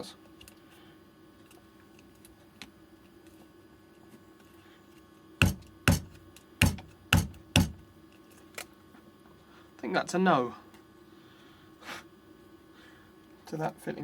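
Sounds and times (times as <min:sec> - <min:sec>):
sharp knocks on plastic: 0:05.4 - 0:07.8.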